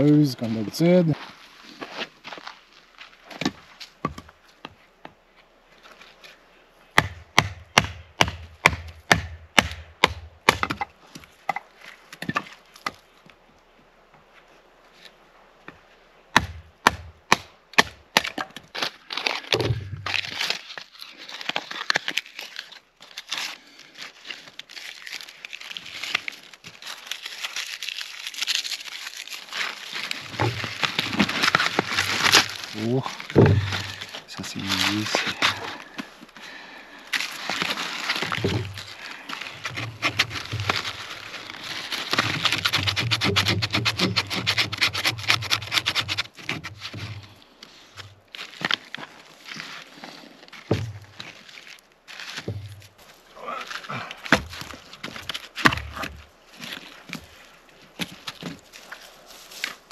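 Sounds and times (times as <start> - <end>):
wood crackling and rustling: 0.0 - 7.5, 10.0 - 59.9
wood being chopped: 7.0 - 11.6, 16.3 - 20.4, 30.3 - 35.7, 37.5 - 38.8, 42.1 - 47.0, 50.7 - 51.2, 52.4 - 52.9, 53.9 - 56.3.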